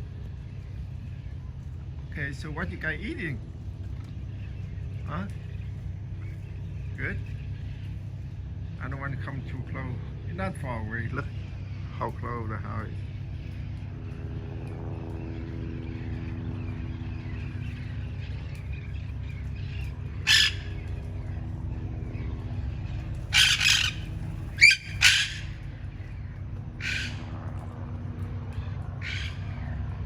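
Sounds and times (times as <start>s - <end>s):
low hum: 0.0s - 30.0s
parrots squawking: 19.6s - 20.9s, 23.2s - 26.1s, 26.7s - 27.4s, 29.0s - 29.7s.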